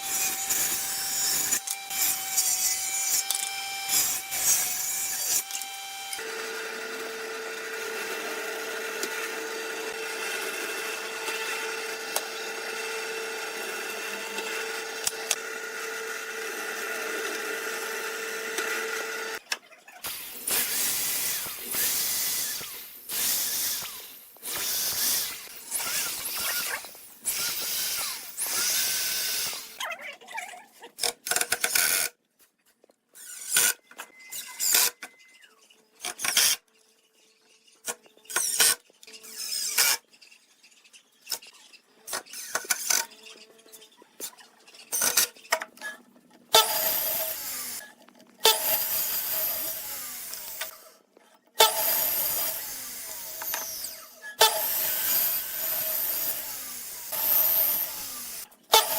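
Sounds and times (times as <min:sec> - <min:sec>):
power tools cutting wood: 0:00.0 - 0:19.4, 0:20.0 - 0:29.8, 0:46.5 - 0:51.0, 0:51.6 - 0:58.9.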